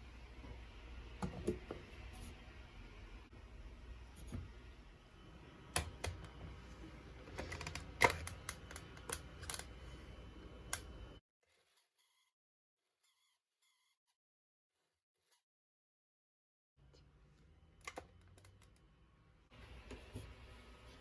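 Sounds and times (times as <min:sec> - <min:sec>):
low steady hum: 0:00.0 - 0:11.2.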